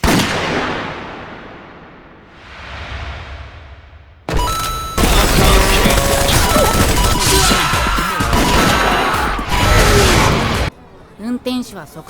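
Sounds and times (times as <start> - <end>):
loud car crash: 4.2 - 10.7.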